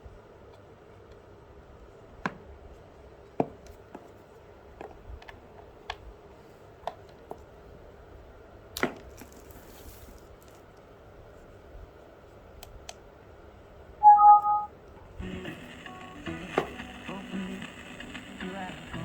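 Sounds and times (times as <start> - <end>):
low steady hum: 9.2 - 19.0.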